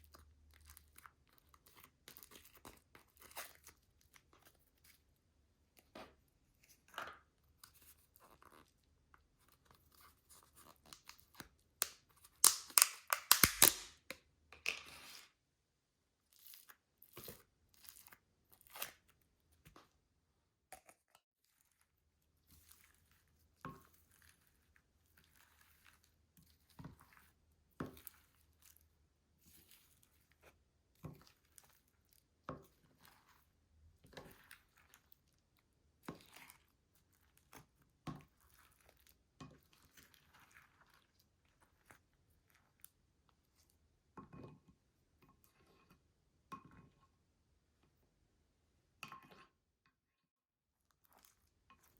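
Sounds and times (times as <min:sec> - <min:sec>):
slime crackling and tearing: 0:12.4 - 0:13.9.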